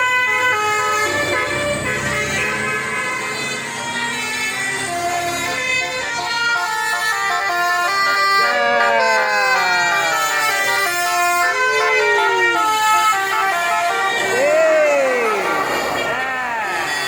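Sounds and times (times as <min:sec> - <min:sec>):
musical bus horns playing: 0:00.0 - 0:17.0.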